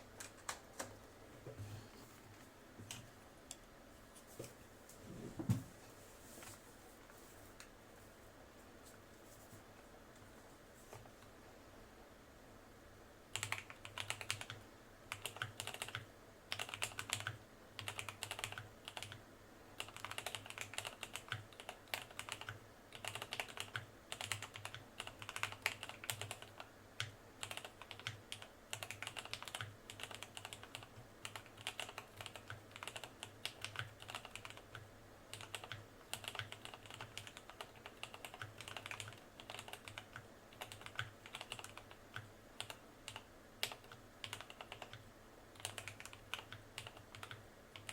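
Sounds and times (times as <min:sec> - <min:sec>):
mechanical keyboard typing: 0:00.2 - 0:00.9, 0:13.3 - 0:19.2, 0:19.8 - 0:45.0, 0:45.6 - 0:47.9.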